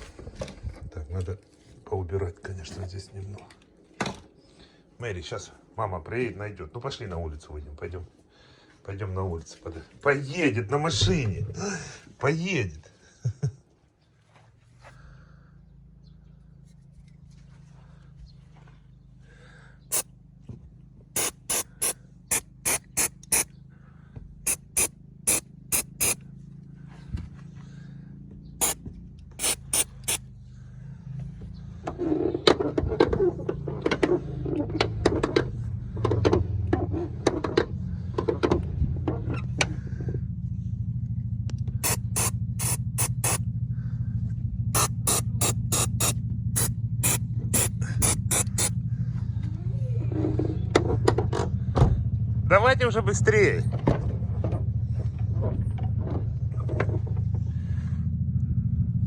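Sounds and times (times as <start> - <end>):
quick sharp clicks: 21.2 - 23.4, 24.5 - 26.2, 29.4 - 30.2, 41.8 - 43.4, 44.8 - 48.7.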